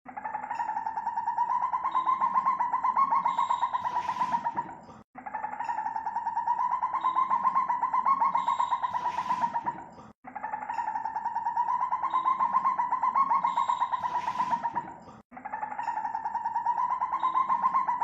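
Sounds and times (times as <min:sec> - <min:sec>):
civet pulsing call: 0:10.7 - 0:18.0.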